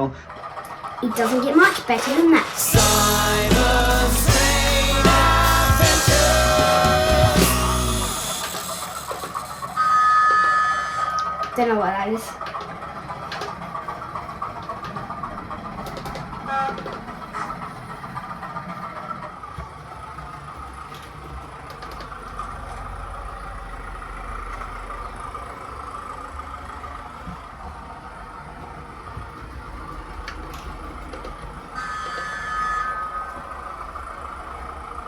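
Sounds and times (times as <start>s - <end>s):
model train diesel engine sound: 0.0s - 11.0s, 12.4s - 35.0s
low rumble: 2.8s - 8.5s.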